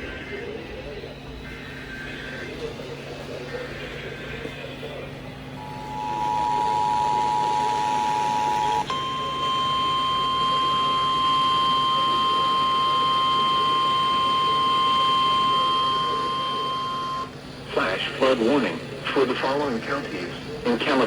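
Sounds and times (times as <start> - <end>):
single steady alarm tone: 5.6 - 17.3
two-note alarm tone: 5.6 - 17.3.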